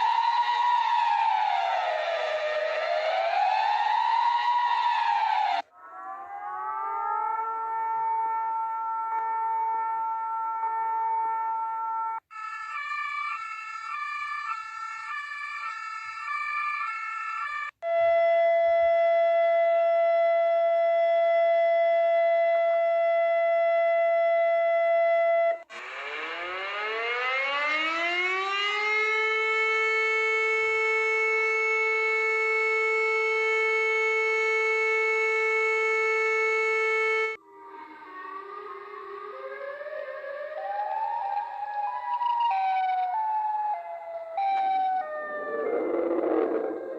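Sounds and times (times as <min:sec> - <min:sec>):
siren winding up: 0:00.0 - 0:17.8, 0:25.3 - 0:46.9
emergency alert alarm tones: 0:25.7 - 0:46.9.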